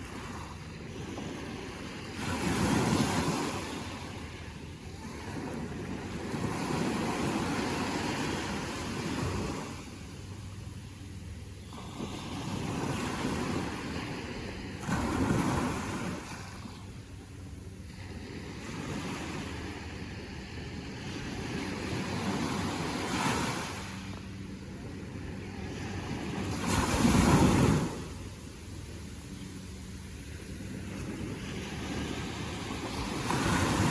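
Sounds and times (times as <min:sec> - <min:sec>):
ocean waves breaking: 0:00.0 - 0:33.9.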